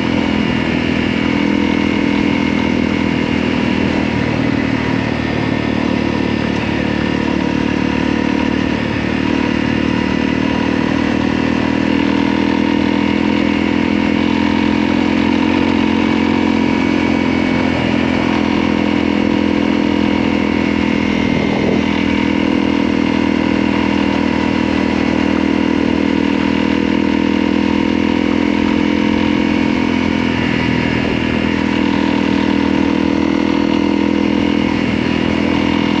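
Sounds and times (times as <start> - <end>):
motorcycle engine running: 0.0 - 36.0.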